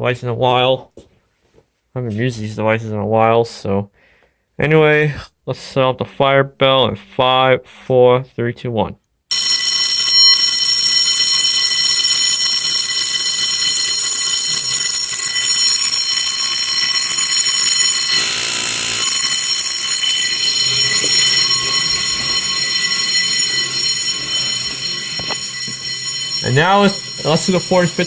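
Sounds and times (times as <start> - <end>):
fire alarm bell ringing: 9.3 - 28.0.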